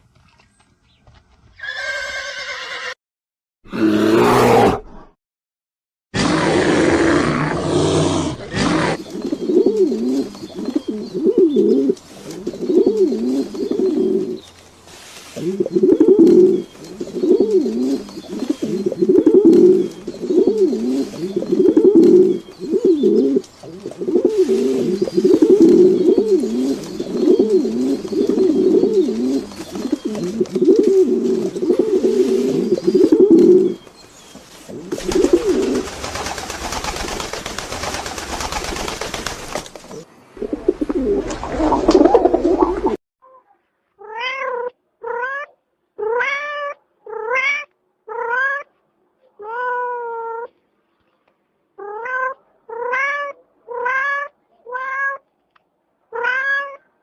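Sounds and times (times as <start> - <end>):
bird cooing: 8.8 - 14.4, 15.4 - 33.8, 34.7 - 36.0, 39.9 - 43.0.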